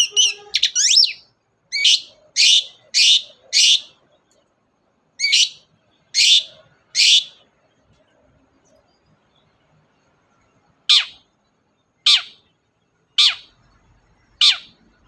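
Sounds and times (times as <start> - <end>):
shrike harsh rasping calls: 13.2 - 13.6, 14.4 - 14.9.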